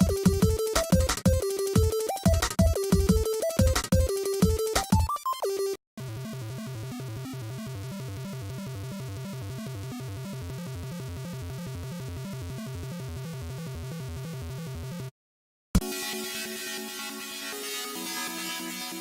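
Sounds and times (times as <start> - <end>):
fast electronic loop with bass: 0.0 - 5.3
bleepy game-style melody: 0.0 - 8.4.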